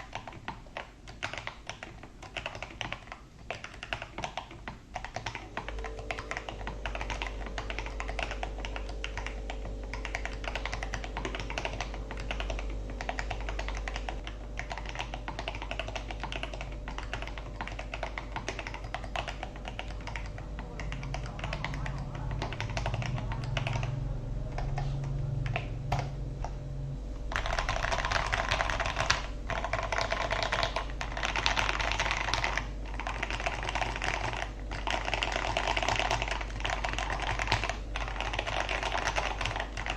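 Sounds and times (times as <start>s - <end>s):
mechanical keyboard typing: 0.0s - 26.6s, 27.2s - 39.9s.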